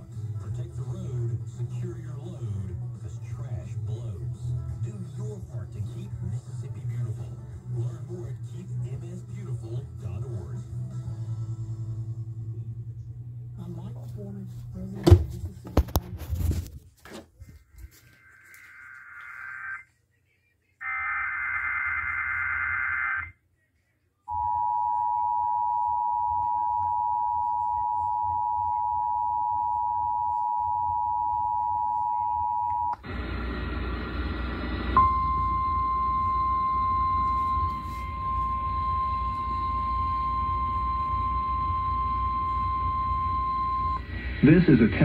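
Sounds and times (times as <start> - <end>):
hissy humming broadcast feed: 0.0 - 24.2, 25.0 - 45.0
two-tone attention signal: 35.0 - 44.1.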